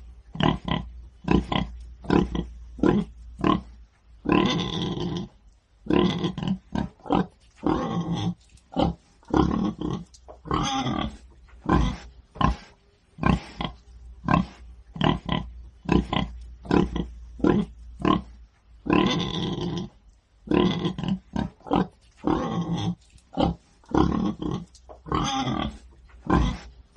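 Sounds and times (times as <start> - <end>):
pig grunting: 0.0 - 5.3, 5.9 - 26.8
pig squealing: 5.9 - 12.6, 20.5 - 26.7.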